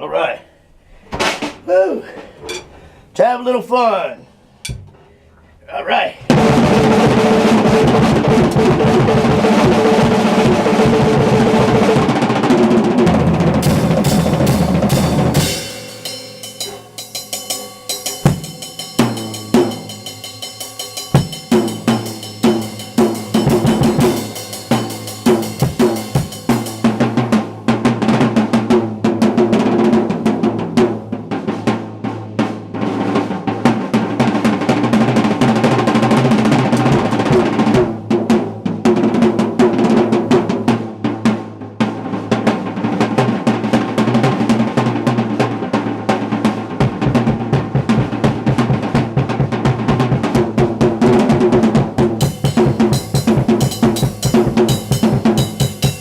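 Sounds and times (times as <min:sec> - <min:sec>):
drum kit playing: 0:01.2 - 0:03.8, 0:04.6 - 0:05.1, 0:06.3 - 0:56.0
cymbals ringing: 0:15.3 - 0:26.8, 0:52.2 - 0:56.0.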